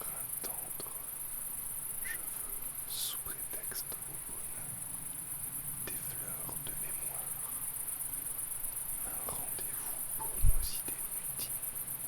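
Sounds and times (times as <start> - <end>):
crickets chirping: 0.0 - 12.0
low thump: 10.4 - 10.7.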